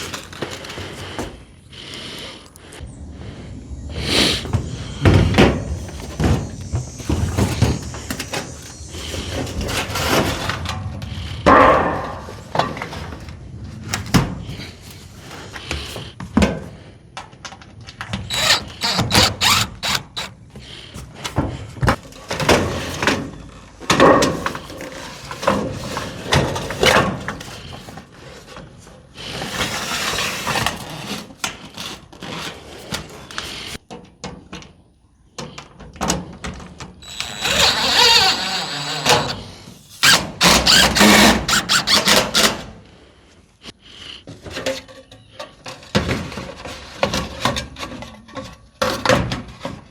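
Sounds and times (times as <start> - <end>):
scraping: 18.3 - 20.4, 37.0 - 42.5.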